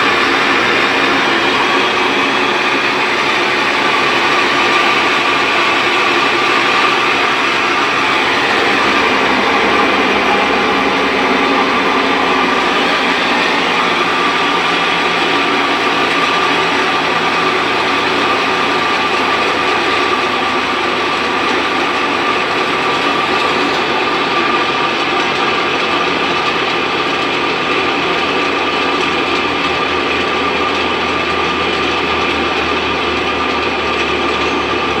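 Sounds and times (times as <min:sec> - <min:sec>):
high whine: 0:00.0 - 0:24.2
washing machine running loudly: 0:00.0 - 0:35.0.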